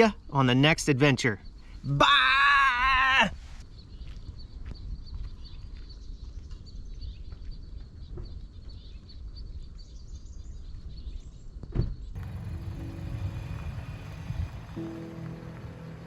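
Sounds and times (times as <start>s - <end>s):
low wind-like rumble: 3.6s - 16.0s
small bird chirping: 3.6s - 16.0s
music: 12.2s - 16.0s.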